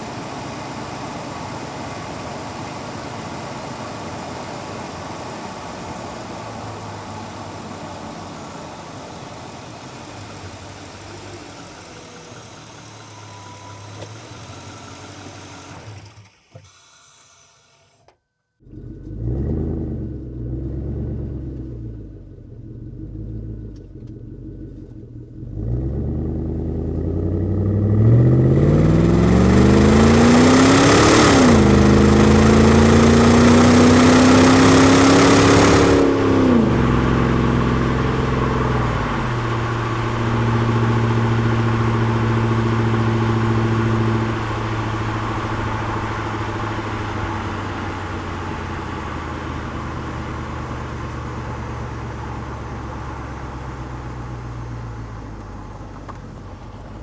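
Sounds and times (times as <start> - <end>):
car engine idling and revving: 0.0 - 57.0.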